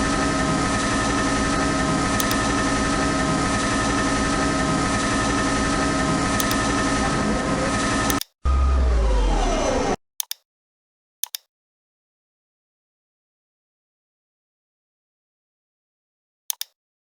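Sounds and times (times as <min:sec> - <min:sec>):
lathe machine hum with whining: 0:00.0 - 0:10.0.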